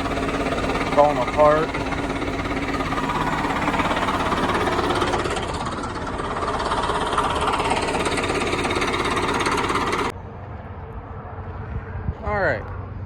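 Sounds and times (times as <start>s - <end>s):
earthmoving machine engine clattering: 0.0s - 10.1s.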